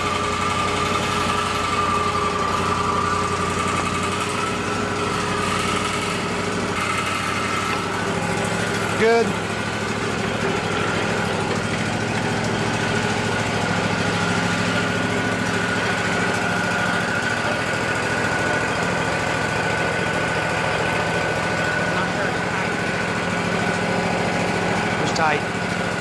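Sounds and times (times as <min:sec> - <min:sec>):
saw high whine: 0:00.0 - 0:26.0
sawmill engine drone: 0:00.0 - 0:26.0.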